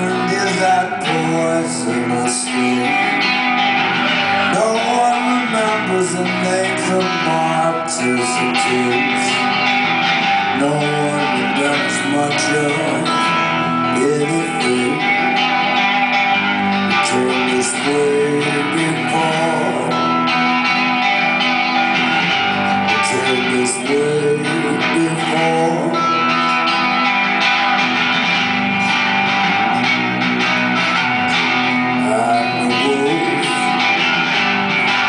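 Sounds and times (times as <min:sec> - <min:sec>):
live instrumental music: 0:00.0 - 0:35.0.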